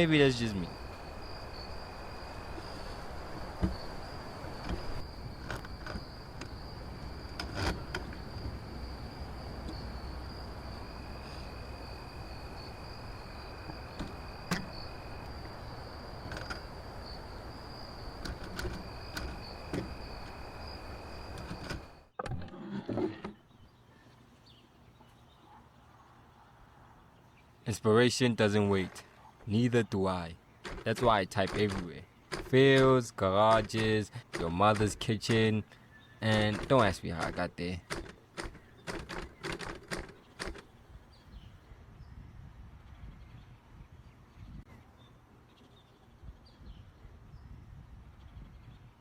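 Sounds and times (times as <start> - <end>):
lower insect trill: 0.0 - 22.1, 30.6 - 40.7
background hiss: 0.0 - 22.2
insects trilling: 0.0 - 22.2, 27.7 - 40.7
sharp clicks and knocks: 4.6 - 8.6, 13.6 - 14.8, 16.2 - 16.6, 18.2 - 20.4, 21.3 - 23.1, 30.6 - 35.6, 36.2 - 40.7.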